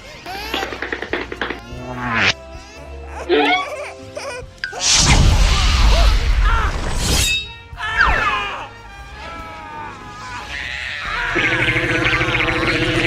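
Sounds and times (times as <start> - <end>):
film music: 0.0 - 13.0
sharp burst: 4.8 - 6.2
loud crash: 4.8 - 7.2.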